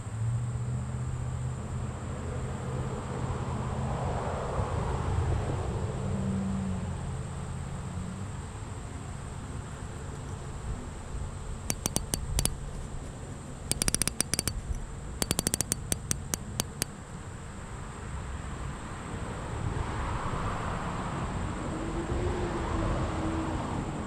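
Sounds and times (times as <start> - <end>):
fishing reel ratcheting clicks: 11.7 - 12.6, 13.7 - 16.9.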